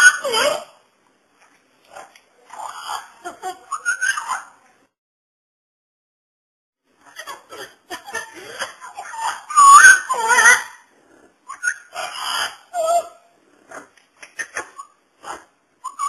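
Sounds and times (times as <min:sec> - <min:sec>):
parrot whistling and chattering: 0:00.0 - 0:00.8, 0:02.5 - 0:04.6, 0:08.3 - 0:10.8, 0:11.4 - 0:16.0.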